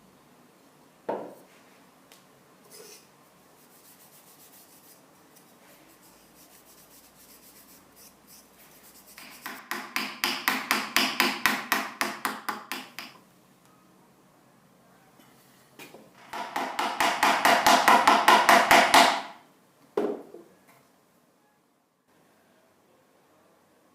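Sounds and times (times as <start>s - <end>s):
knock: 1.1s - 1.4s, 20.0s - 20.4s
hand tool rubbing strokes: 3.6s - 9.6s.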